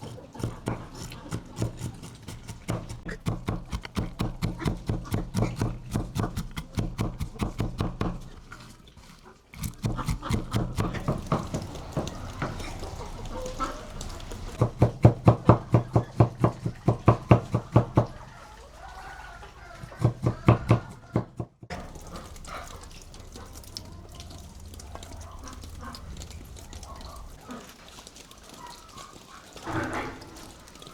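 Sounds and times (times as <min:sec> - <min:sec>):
rapid knocks: 0:00.4 - 0:08.4, 0:09.6 - 0:18.2, 0:20.0 - 0:23.6.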